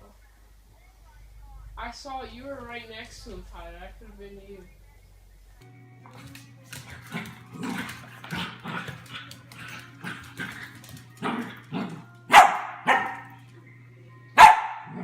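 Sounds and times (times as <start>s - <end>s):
dog barking: 12.3s - 13.4s, 14.4s - 15.0s.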